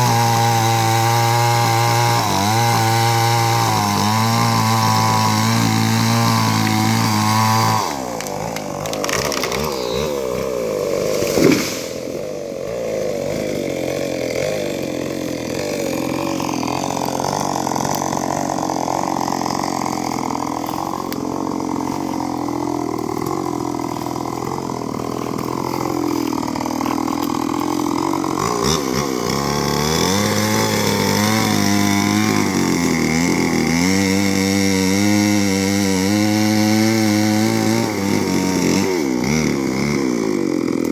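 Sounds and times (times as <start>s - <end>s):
chainsaw cutting wood: 0.0s - 40.9s
sharp crack: 8.1s - 9.9s, 11.0s - 12.0s.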